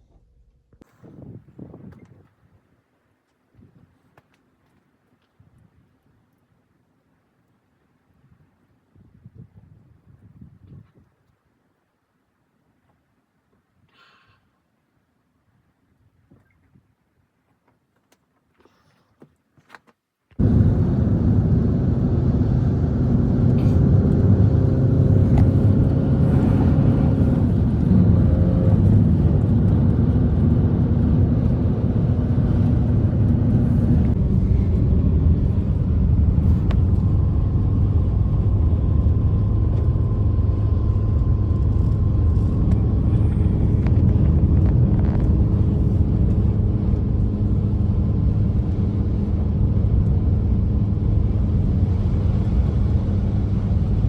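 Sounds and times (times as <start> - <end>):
blizzard wind blowing hard: 0.8 - 2.7, 20.4 - 54.0.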